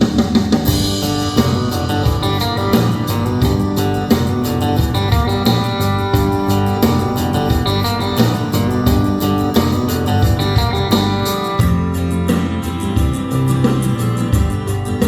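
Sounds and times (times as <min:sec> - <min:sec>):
guitar music through speaker: 0:00.6 - 0:15.0.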